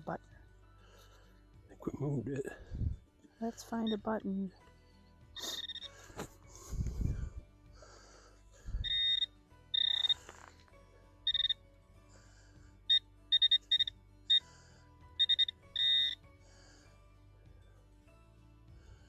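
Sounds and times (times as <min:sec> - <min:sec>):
metal detector beeping: 0:05.4 - 0:05.9, 0:08.8 - 0:10.2, 0:11.3 - 0:11.6, 0:12.9 - 0:14.4, 0:15.2 - 0:16.2.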